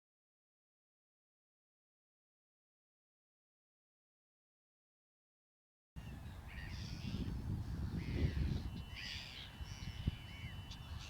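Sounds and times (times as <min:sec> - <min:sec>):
crows cawing: 0:06.4 - 0:11.0.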